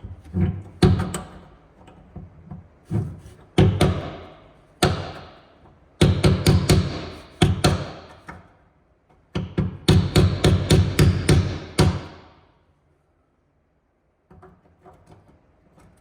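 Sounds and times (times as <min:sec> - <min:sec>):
hammer striking metal punch: 0:03.6 - 0:05.4, 0:06.0 - 0:08.2, 0:09.4 - 0:12.4.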